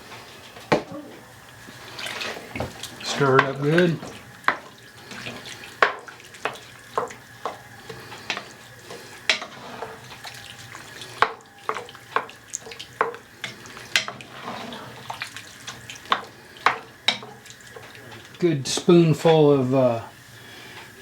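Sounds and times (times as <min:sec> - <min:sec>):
faint hiss from pot: 0:01.5 - 0:21.0
spoon scraping against pot: 0:01.8 - 0:17.9.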